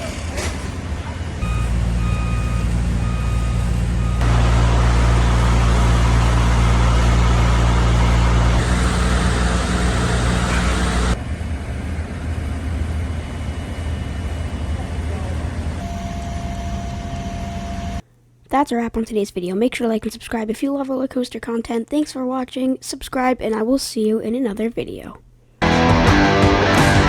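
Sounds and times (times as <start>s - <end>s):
construction machinery engine running: 0.0s - 16.0s
back-up alarm beeping: 1.4s - 11.2s, 15.8s - 18.0s.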